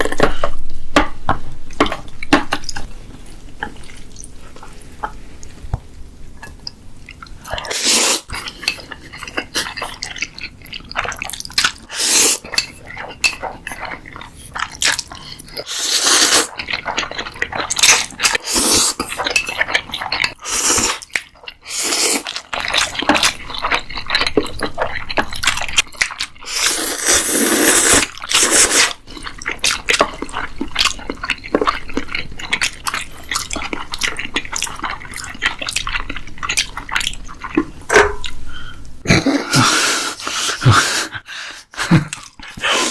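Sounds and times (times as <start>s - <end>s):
chewing and crunching: 6.3s - 15.7s, 16.5s - 26.6s, 28.0s - 38.4s, 41.9s - 42.7s.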